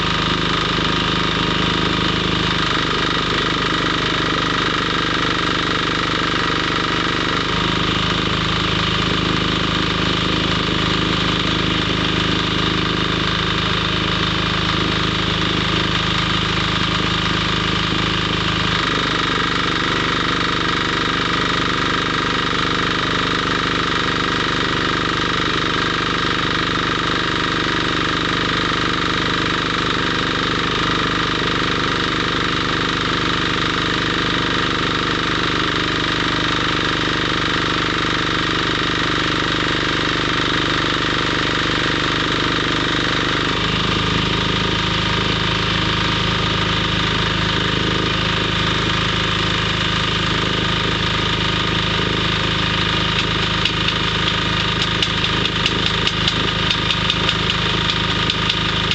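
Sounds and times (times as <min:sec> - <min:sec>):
machine hum: 0:51.7 - 0:58.9.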